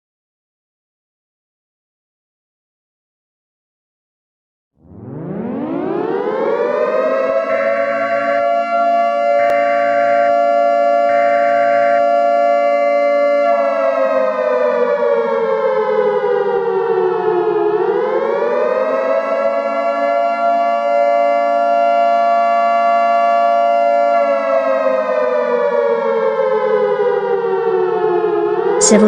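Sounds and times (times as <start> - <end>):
civil defense siren: 4.8 - 29.0
buzzy data tones: 7.5 - 8.4, 9.4 - 12.1.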